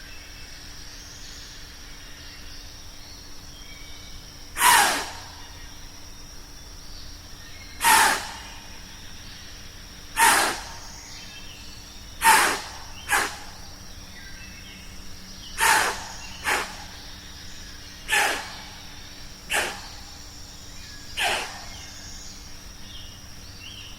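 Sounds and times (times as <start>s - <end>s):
faint outdoor background: 0.0s - 23.9s
breathy snorts of air: 4.6s - 5.2s, 7.8s - 8.6s, 10.2s - 10.9s, 12.2s - 13.5s, 15.6s - 16.9s, 18.1s - 18.8s, 19.5s - 20.0s, 21.2s - 21.8s.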